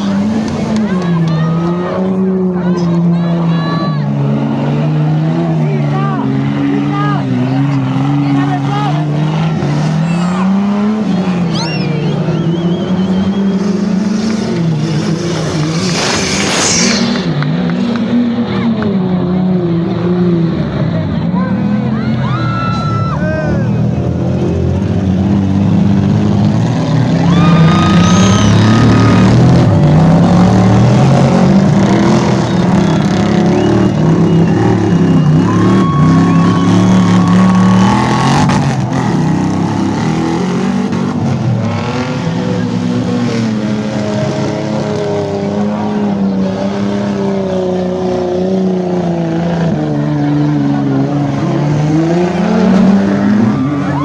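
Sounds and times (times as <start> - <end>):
off-road engines revving: 0.0 - 54.0
high whistles: 9.8 - 14.2, 15.8 - 17.3, 27.3 - 29.4, 32.4 - 38.3.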